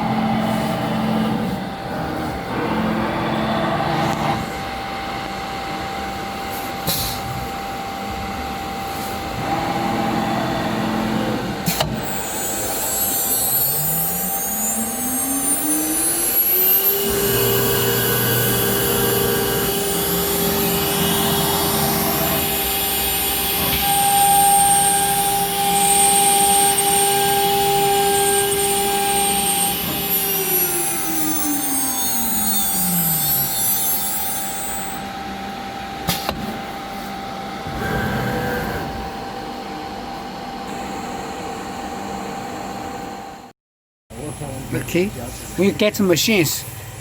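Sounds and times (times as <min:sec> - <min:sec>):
router spindle whine: 0:00.0 - 0:06.4, 0:08.0 - 0:36.0.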